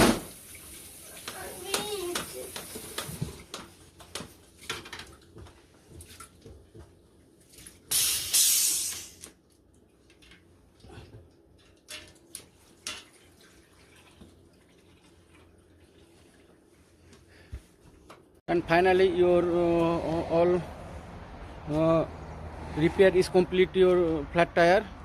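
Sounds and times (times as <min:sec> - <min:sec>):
air hissing into tire: 0:07.9 - 0:09.2.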